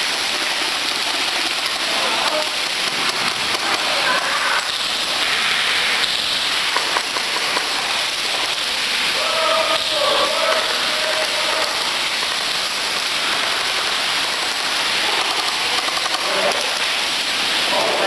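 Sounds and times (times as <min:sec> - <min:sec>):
loud hiss: 0:00.0 - 0:18.0
people chattering: 0:00.0 - 0:18.0.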